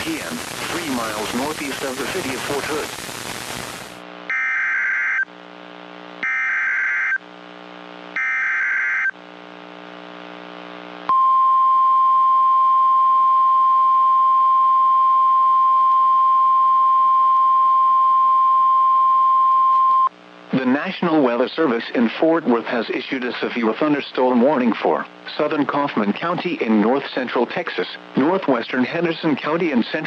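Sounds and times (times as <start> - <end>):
buzzy digital data tones: 0.0 - 4.0
steady single-pitch alarm tone: 4.3 - 5.3, 6.2 - 7.2, 8.2 - 9.2.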